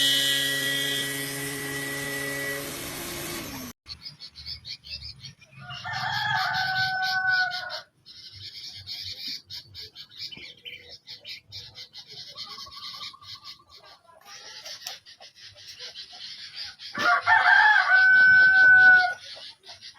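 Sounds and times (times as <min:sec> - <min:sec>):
birds chirping and clucking: 0:03.4 - 0:19.9
rooster crowing: 0:05.6 - 0:07.9, 0:17.0 - 0:19.2.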